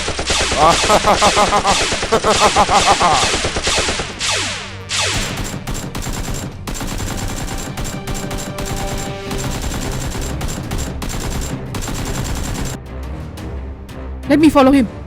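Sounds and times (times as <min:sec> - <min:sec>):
rapid automatic gunfire: 0:00.0 - 0:12.8.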